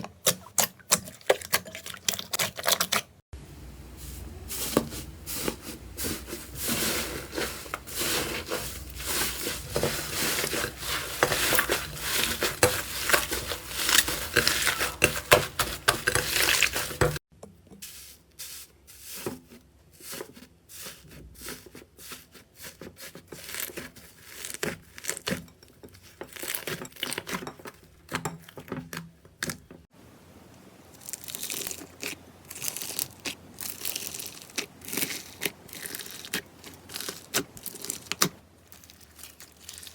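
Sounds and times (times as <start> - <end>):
slime crackling and popping: 31.0 - 39.9.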